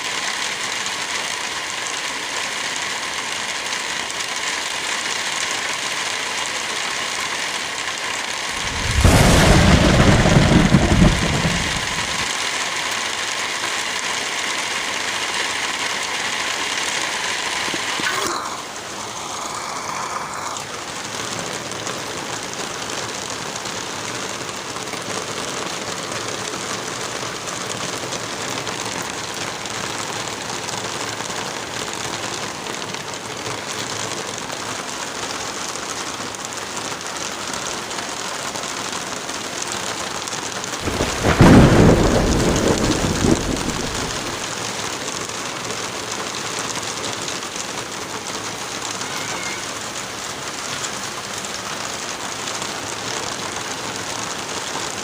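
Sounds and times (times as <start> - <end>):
steady rain falling: 0.0 - 55.0
thunderclap rumbling: 8.6 - 12.3, 40.8 - 44.5.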